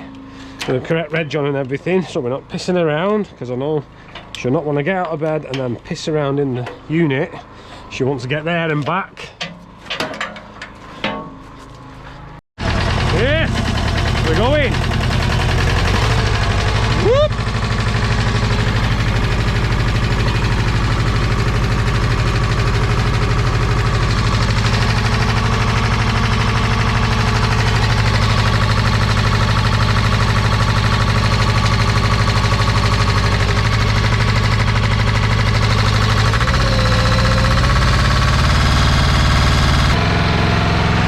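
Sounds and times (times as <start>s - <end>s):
pressure washer engine running: 12.6s - 41.0s.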